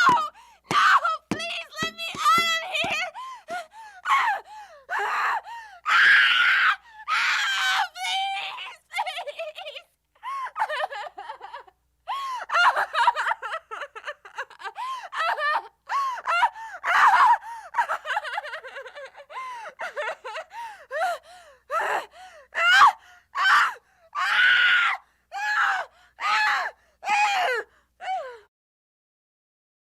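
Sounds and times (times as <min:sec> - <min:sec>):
woman screaming: 0:00.0 - 0:09.4.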